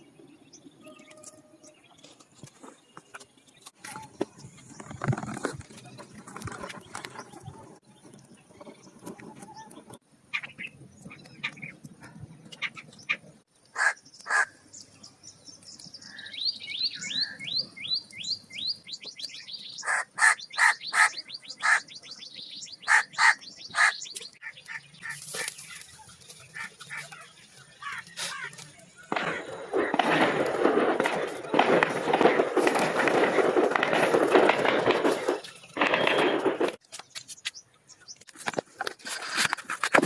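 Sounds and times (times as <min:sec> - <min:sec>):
birds chirping: 0:00.0 - 0:40.0
sharp repeated bird calls: 0:10.3 - 0:11.8, 0:12.5 - 0:38.2.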